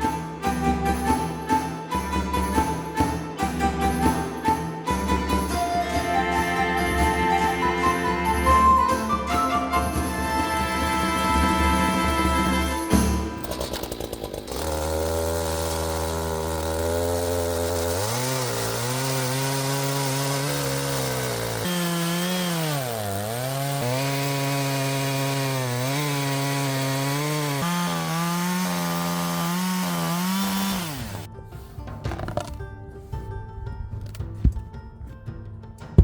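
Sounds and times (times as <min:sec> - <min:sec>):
chainsaw cutting wood: 0:03.4 - 0:31.3.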